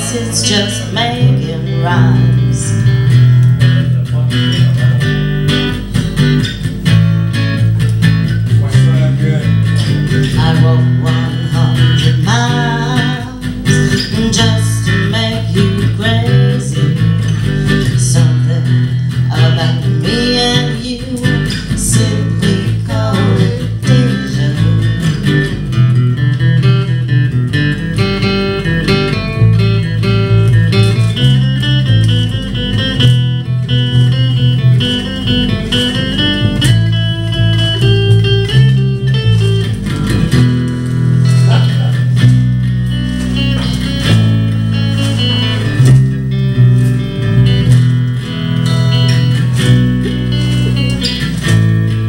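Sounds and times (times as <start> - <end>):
bass guitar notes: 0.0 - 52.0
plucked guitar lines: 0.0 - 52.0.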